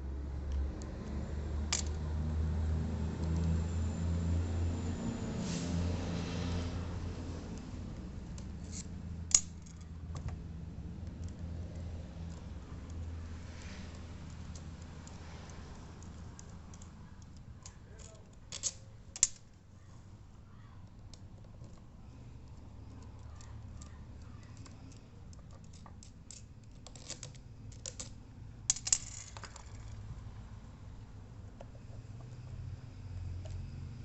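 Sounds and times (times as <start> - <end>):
small parts clicking and tapping: 0.4 - 2.1, 3.1 - 3.6, 7.5 - 19.8, 20.6 - 30.2.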